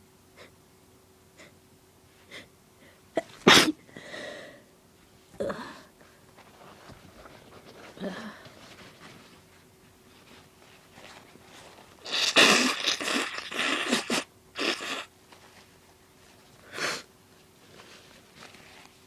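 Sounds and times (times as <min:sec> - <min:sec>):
woman sneezing: 0:03.2 - 0:03.8.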